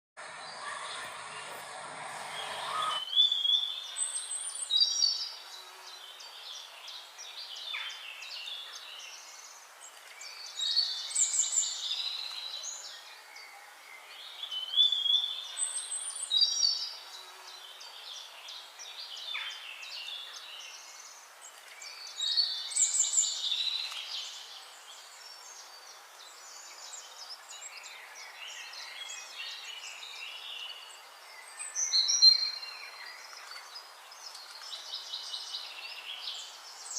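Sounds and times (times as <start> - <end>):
faint chirping of other birds: 0.2 - 36.9
bird singing loud phrase: 0.3 - 9.6.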